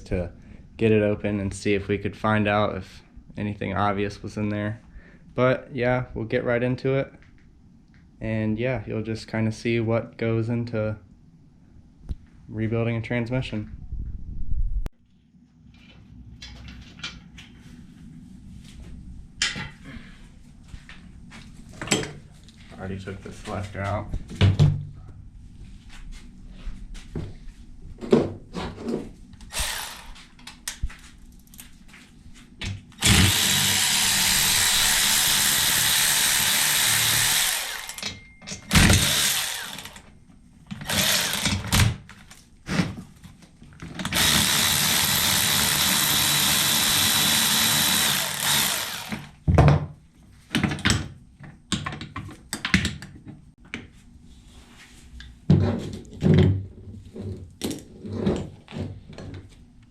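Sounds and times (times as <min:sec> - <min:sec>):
power tool running: 0:29.4 - 0:30.3, 0:33.0 - 0:40.1, 0:40.8 - 0:41.9, 0:44.1 - 0:49.4.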